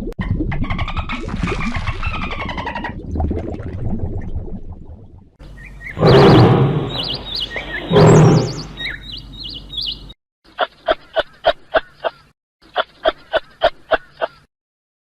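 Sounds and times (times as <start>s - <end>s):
high bird chirps: 5.4s - 10.2s
short pulsed calls: 5.6s - 10.1s
deep animal calls: 5.8s - 9.9s.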